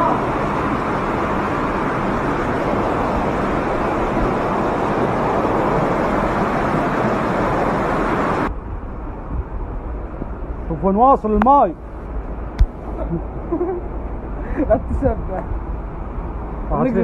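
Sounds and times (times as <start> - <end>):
vehicle loud rushing noise: 0.0 - 10.9
low vehicle rumble: 0.0 - 17.0.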